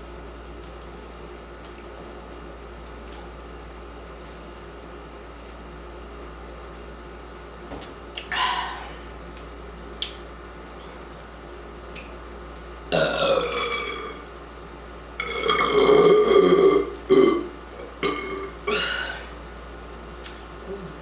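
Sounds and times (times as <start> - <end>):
person burping: 12.9 - 14.2, 15.2 - 19.3.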